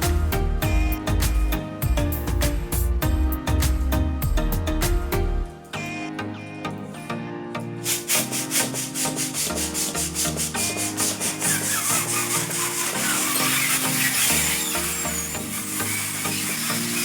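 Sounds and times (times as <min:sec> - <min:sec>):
background music sustained notes: 0:00.0 - 0:17.0
rhythmic rasping rubbing noise: 0:07.8 - 0:17.0.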